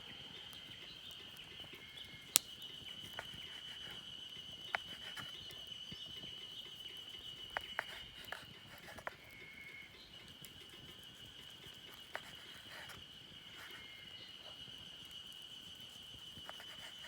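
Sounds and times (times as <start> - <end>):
cricket trilling: 0.0 - 17.0
sharp clicks: 2.3 - 3.5.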